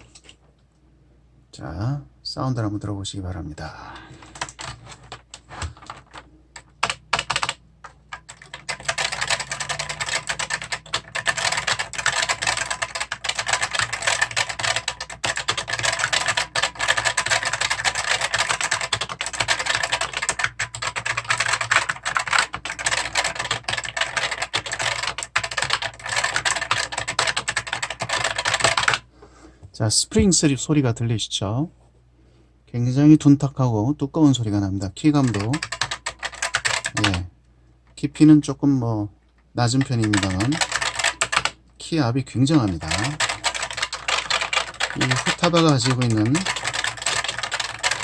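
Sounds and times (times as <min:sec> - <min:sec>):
typing on mechanical keyboard: 0:04.2 - 0:29.0, 0:35.2 - 0:37.3, 0:39.7 - 0:41.6, 0:42.4 - 0:48.0.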